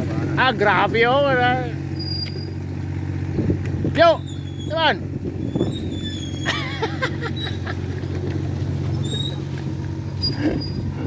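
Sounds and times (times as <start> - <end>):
backhoe engine running: 0.0 - 11.0
short high squeaks: 1.9 - 3.4, 4.0 - 11.0.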